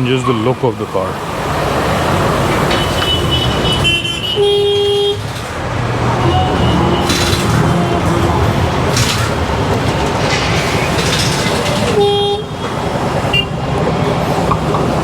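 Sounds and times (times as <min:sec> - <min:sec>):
road traffic rumbling: 0:00.0 - 0:15.0
vehicle horn tooting: 0:02.7 - 0:05.3, 0:06.2 - 0:08.8, 0:11.9 - 0:13.6.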